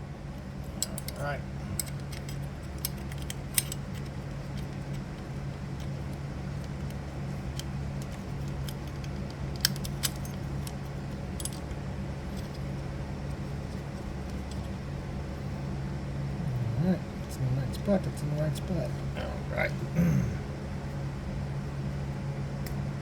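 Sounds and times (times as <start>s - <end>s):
small metal parts clicking: 0.8s - 1.2s, 1.8s - 5.2s, 6.6s - 10.8s, 11.4s - 11.7s.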